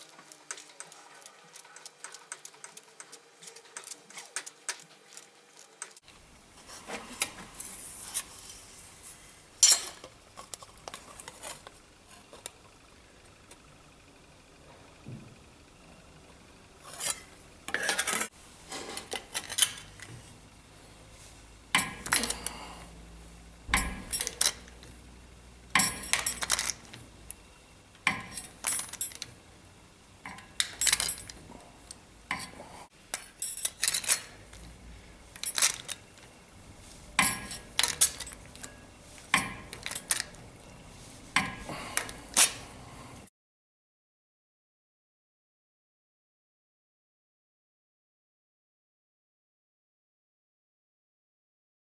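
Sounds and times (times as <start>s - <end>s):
sheet steel clinks and taps: 25.8s - 26.7s, 37.2s - 38.3s.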